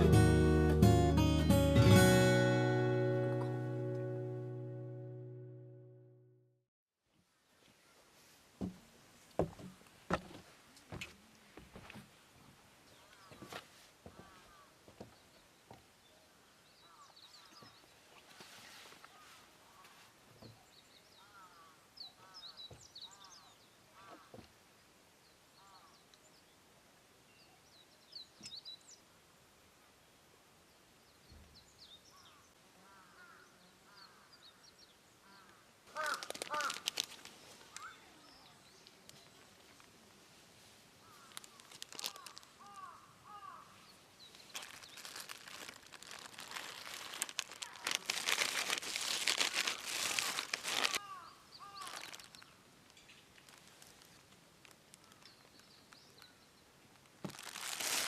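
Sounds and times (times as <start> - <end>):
crackling rustling noise: 18.0 - 20.2, 35.9 - 38.0, 38.8 - 43.0, 44.2 - 58.0.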